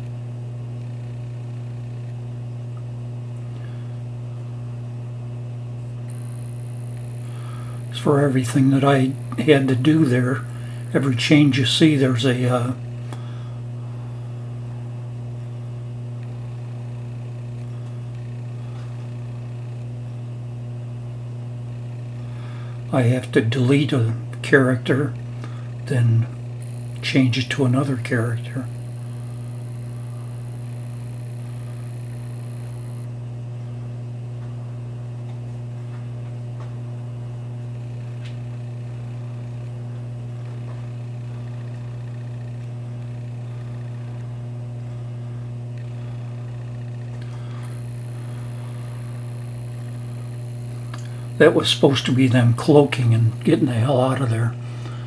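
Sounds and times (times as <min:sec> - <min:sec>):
faint high-pitched whine: 0:00.0 - 0:55.0
low electrical hum: 0:00.0 - 0:55.0
faint ticks: 0:38.0 - 0:51.4.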